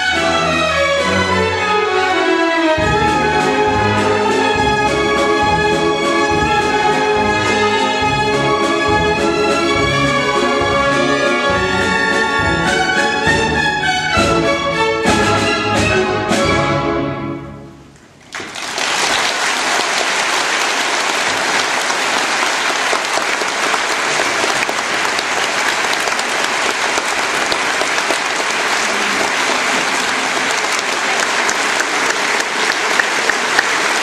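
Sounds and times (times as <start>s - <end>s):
audience applause: 18.2s - 34.0s.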